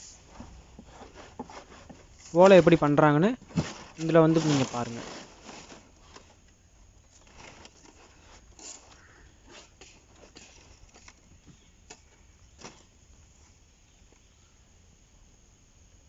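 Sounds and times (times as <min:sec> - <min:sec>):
dry palm fronds crackling: 0:00.0 - 0:13.0.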